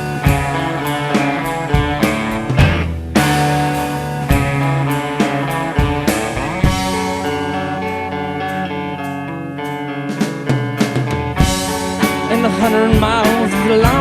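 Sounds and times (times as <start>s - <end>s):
instrumental rock music: 0.0s - 14.0s.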